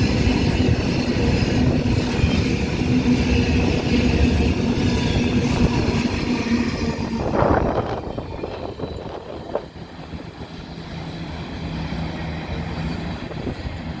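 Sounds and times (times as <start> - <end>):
goods train rumbling on track: 0.0 - 14.0.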